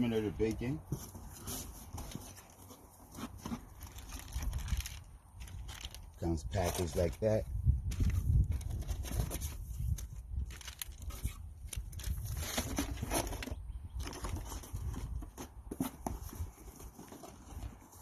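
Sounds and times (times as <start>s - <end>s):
plastic wrap crinkling: 3.4s - 7.2s, 9.9s - 13.4s.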